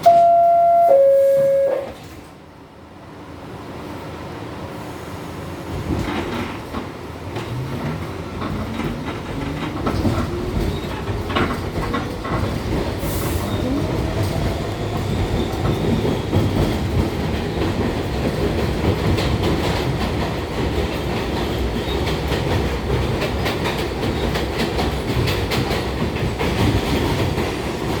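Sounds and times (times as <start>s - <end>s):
subway train running: 0.0s - 28.0s
wheels clicking over rail joints: 5.9s - 28.0s.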